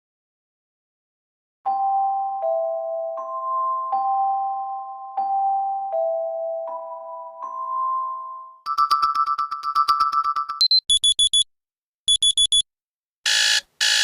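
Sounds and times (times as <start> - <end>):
fast electronic beeping: 10.6 - 11.5, 12.1 - 12.6
quick high beeps: 10.6 - 11.5, 12.1 - 12.7
harsh buzzing tone: 13.2 - 14.0.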